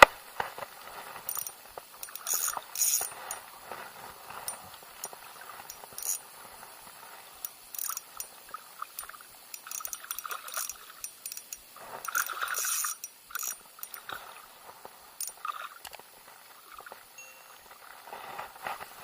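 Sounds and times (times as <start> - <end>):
water splashing: 0.5 - 19.0
fishing reel clicking: 1.3 - 3.5, 4.4 - 14.2, 15.2 - 16.0.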